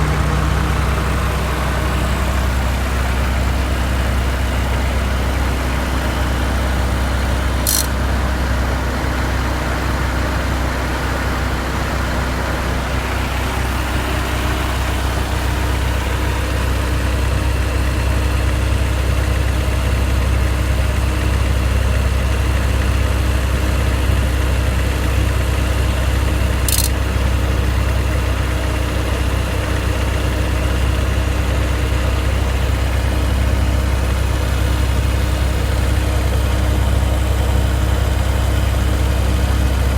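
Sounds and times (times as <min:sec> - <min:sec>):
ac compressor rapid ticking: 0:00.0 - 0:10.4, 0:23.6 - 0:39.9
car engine idling: 0:00.0 - 0:39.9
sharp high clicks: 0:07.6 - 0:08.0, 0:26.6 - 0:27.0.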